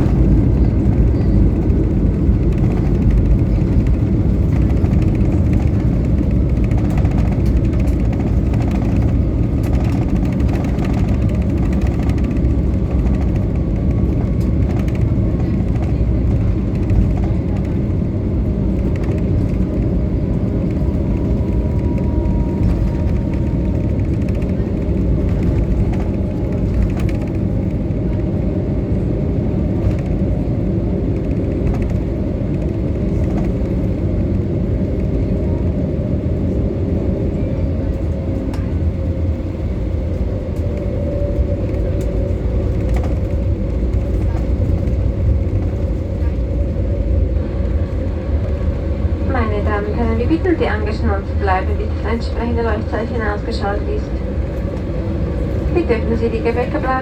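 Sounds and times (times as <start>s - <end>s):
airplane cabin engine rumble: 0.0s - 57.0s
faint high engine whine: 0.0s - 57.0s.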